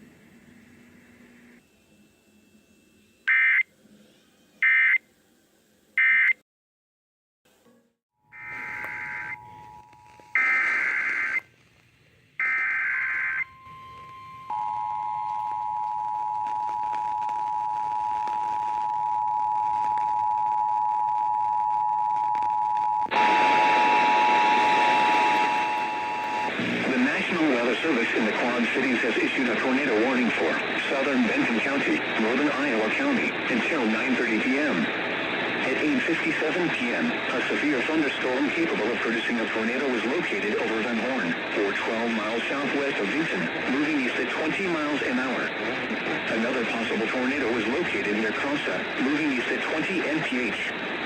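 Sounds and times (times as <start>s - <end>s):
two-tone attention signal: 8.2s - 10.4s, 13.4s - 16.9s, 23.1s - 26.5s
digital data tone bursts: 8.3s - 11.4s.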